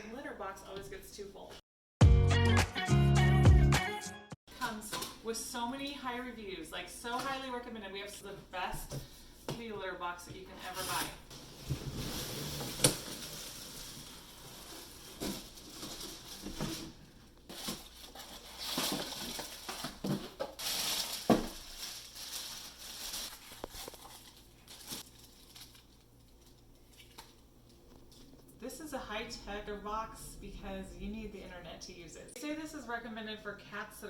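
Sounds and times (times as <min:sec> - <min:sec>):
cardboard and plastic rustling: 0:10.6 - 0:28.3.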